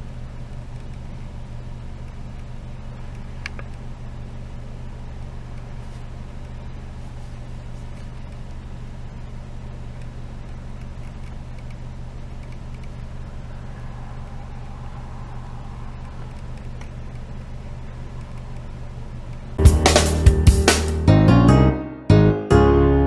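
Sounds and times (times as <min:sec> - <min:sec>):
low engine drone: 0:11.8 - 0:21.2.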